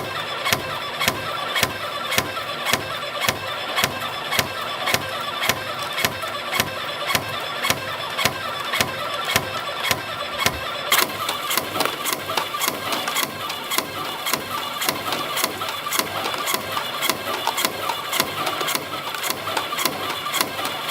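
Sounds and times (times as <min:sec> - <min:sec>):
machine whirring: 0:00.0 - 0:20.9
rhythmic sharp clicks: 0:00.0 - 0:20.9.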